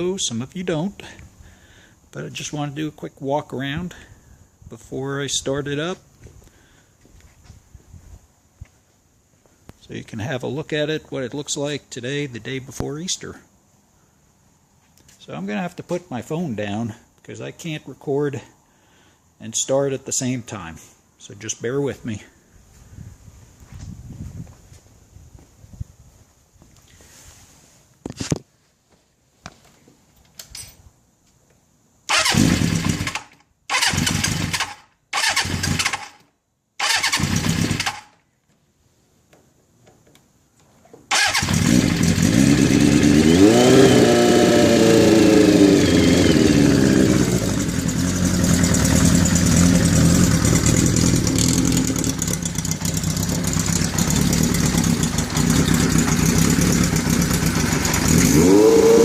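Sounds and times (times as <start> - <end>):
motorcycle engine revving and idling: 32.1 - 36.2, 36.8 - 38.1, 41.1 - 59.0
motorcycle starter cranking: 32.1 - 36.2, 36.8 - 38.2, 41.1 - 58.6.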